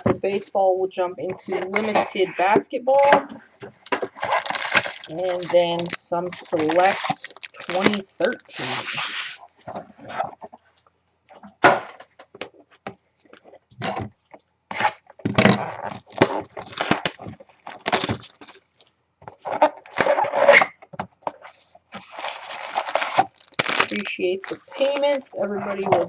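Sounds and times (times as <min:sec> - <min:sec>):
cardboard scraping and rustling: 0:03.7 - 0:10.5, 0:21.4 - 0:26.0
packaging tearing: 0:04.0 - 0:09.4, 0:15.6 - 0:18.6, 0:22.0 - 0:25.2.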